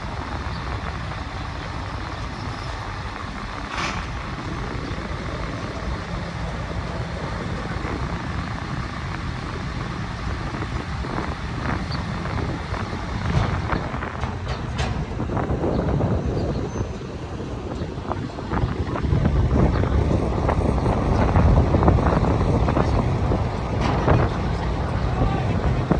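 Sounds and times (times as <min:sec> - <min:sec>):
ferry engine rumbling: 0:00.0 - 0:25.9.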